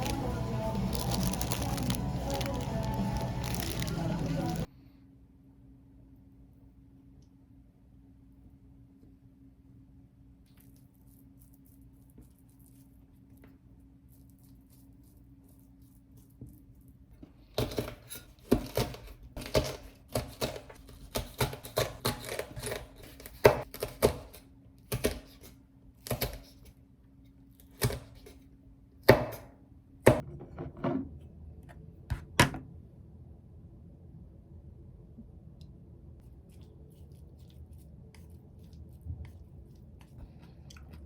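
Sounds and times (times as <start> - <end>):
faint steady hum: 0.0 - 18.6, 31.0 - 41.0
knife chopping on cutting board: 17.6 - 25.4, 29.0 - 29.5, 30.1 - 30.3.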